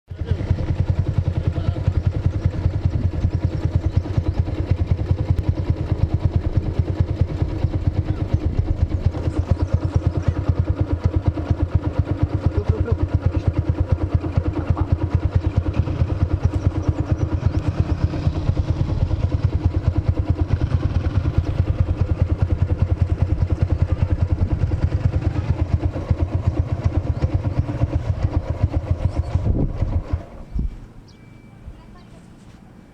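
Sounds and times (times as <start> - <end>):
motorcycle engine running: 0.1 - 32.2.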